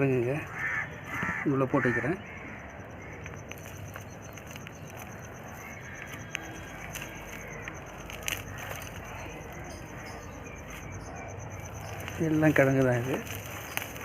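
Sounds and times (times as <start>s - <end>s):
high-pitched insect trill: 0.0s - 14.0s
faint clicks and rustles: 3.0s - 14.0s.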